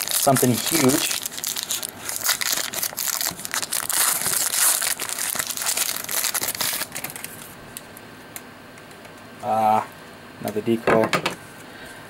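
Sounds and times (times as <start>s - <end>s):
wrapper crinkling: 0.0s - 7.6s.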